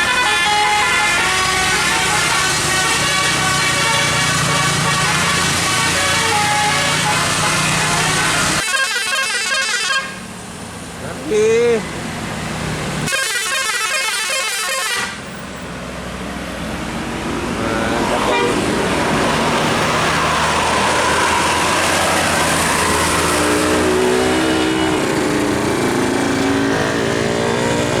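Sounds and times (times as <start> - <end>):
musical bus horn: 0.0 - 10.3, 13.0 - 15.3, 18.2 - 18.7
bus engine: 0.0 - 28.0.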